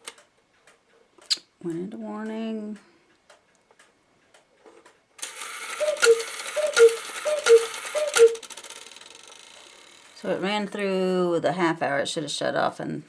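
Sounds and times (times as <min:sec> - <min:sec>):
clock mechanism whirring: 0:05.2 - 0:10.2
two-note cuckoo call: 0:05.7 - 0:08.5.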